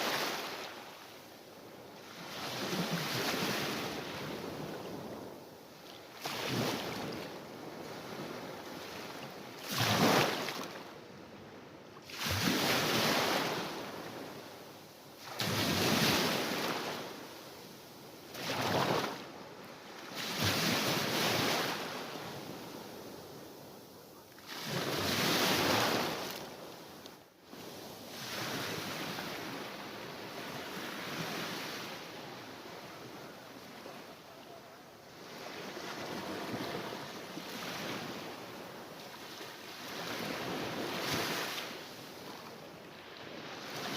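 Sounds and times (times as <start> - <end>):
sea waves breaking: 6.0 - 10.8, 18.3 - 27.0, 27.6 - 43.9.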